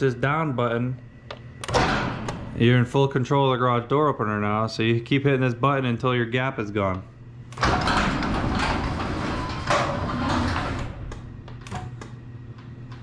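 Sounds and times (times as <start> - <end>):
garage door opener rumbling: 1.6 - 3.0, 7.4 - 13.0.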